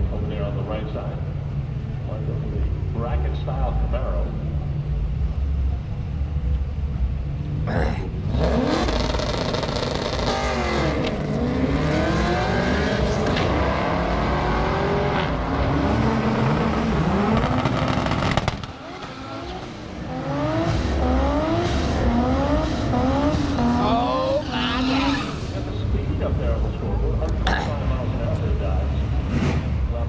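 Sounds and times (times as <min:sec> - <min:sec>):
drag race cars accelerating: 0:08.2 - 0:30.0.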